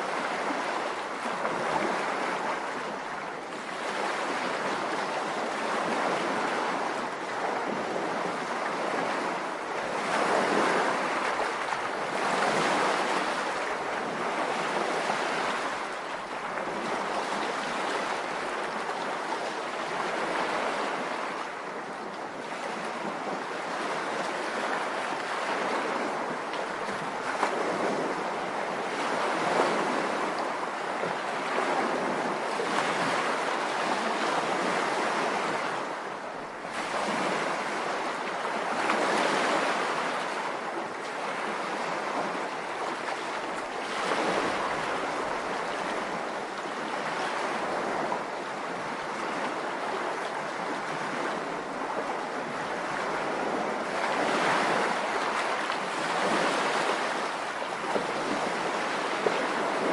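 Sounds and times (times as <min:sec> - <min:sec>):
rushing water: 0:00.0 - 0:59.9.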